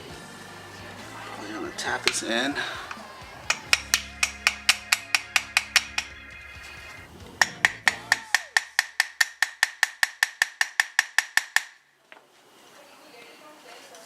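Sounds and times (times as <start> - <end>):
hammer tapping metal: 2.0 - 2.5, 3.4 - 6.3, 7.4 - 11.8.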